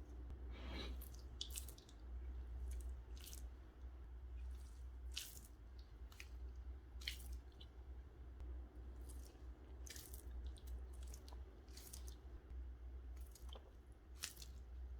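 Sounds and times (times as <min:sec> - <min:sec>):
steady low hum: 0:00.0 - 0:14.9
slime squelching: 0:00.8 - 0:03.7, 0:04.3 - 0:07.9, 0:08.8 - 0:12.4, 0:13.1 - 0:14.9.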